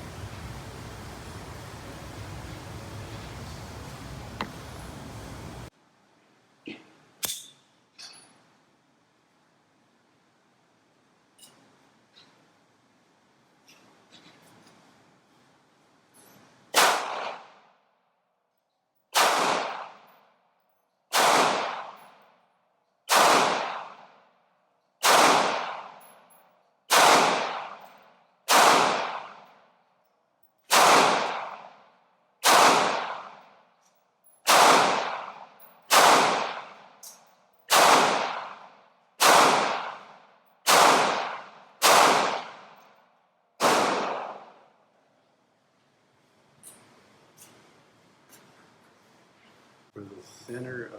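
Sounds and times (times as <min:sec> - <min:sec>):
pistol shots with ringing echo: 0:16.8 - 0:17.6, 0:19.1 - 0:20.2, 0:21.1 - 0:22.2, 0:23.1 - 0:24.1, 0:25.0 - 0:26.1, 0:26.9 - 0:29.6, 0:30.7 - 0:31.8, 0:32.4 - 0:33.5, 0:34.4 - 0:42.8, 0:43.6 - 0:44.6.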